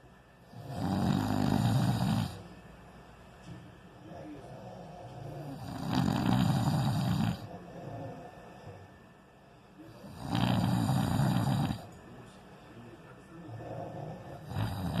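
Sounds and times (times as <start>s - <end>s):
quiet breathing: 0.0s - 15.0s
man snoring: 0.5s - 2.5s, 4.4s - 8.8s, 9.9s - 11.9s, 13.5s - 15.0s.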